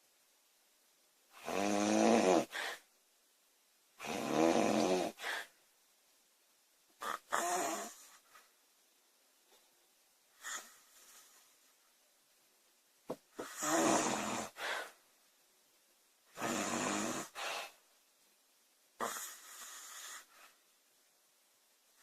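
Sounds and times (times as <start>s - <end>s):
woman snoring: 1.4s - 2.8s, 4.0s - 5.5s, 7.0s - 8.2s, 13.4s - 14.9s, 16.4s - 17.6s.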